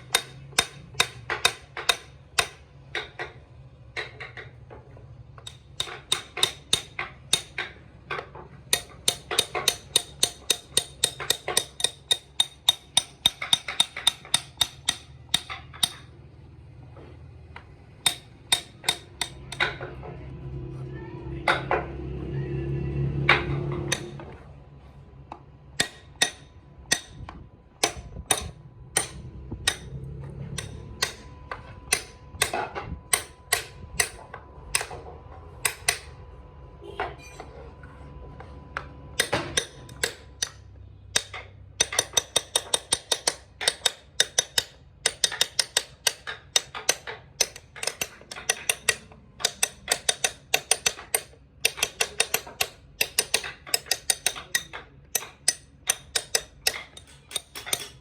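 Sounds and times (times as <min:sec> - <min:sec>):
hand tool tapping wood: 0:05.4 - 0:16.1, 0:17.0 - 0:19.9, 0:23.4 - 0:24.2, 0:39.2 - 0:58.0.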